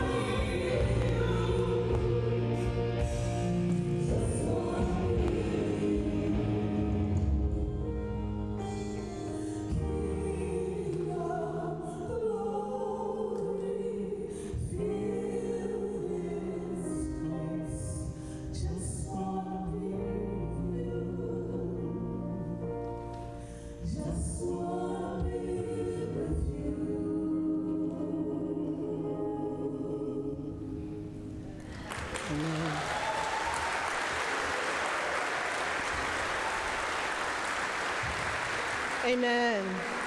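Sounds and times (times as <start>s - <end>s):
people singing: 0.0s - 8.0s, 9.7s - 22.7s, 23.8s - 33.0s
praise band accompaniment: 0.0s - 12.3s, 31.6s - 40.0s.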